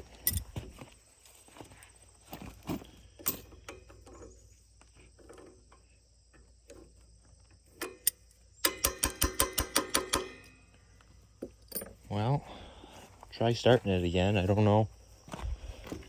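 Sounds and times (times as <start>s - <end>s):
sharp metallic taps: 7.8s - 10.6s.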